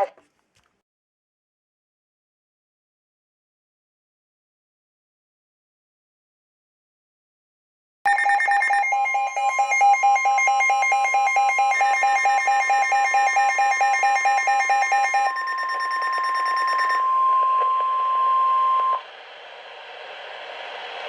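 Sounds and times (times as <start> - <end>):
rapid pulsing alert beeps: 8.1 - 17.9
steady alarm tone: 8.1 - 19.0.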